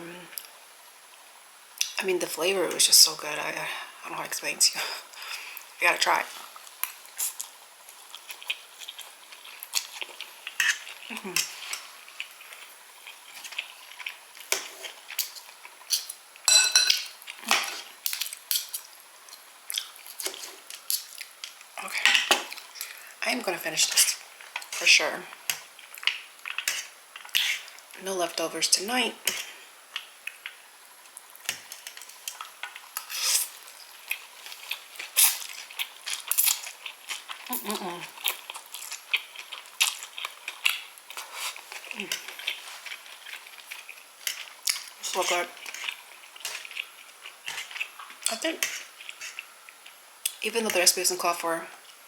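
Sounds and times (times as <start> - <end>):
cutlery clinking on a dish: 16.5 - 17.7.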